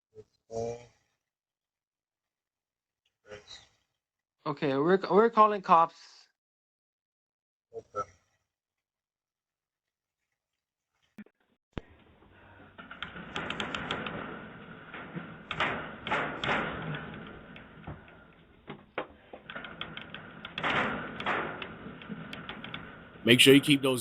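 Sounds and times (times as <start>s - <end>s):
door rattling and knocking: 11.8s - 24.0s.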